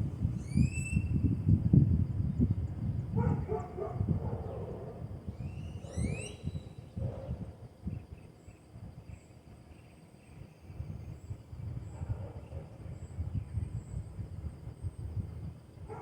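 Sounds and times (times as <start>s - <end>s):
faint high-pitched chirps: 0.3s - 1.4s, 5.3s - 7.0s.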